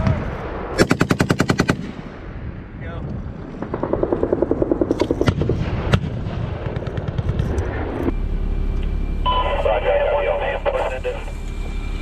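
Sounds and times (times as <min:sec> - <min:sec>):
machine-gun fire: 0:00.7 - 0:02.0, 0:03.4 - 0:07.4.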